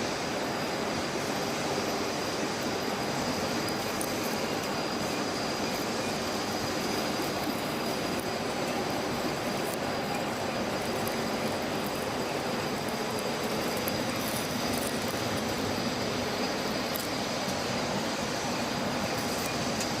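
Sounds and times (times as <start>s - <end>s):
machine running: 0.0s - 20.0s
thin high whine: 0.0s - 20.0s.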